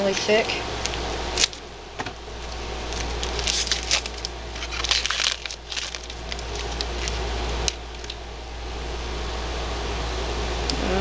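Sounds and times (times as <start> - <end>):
wrapper crinkling: 2.4 - 8.2.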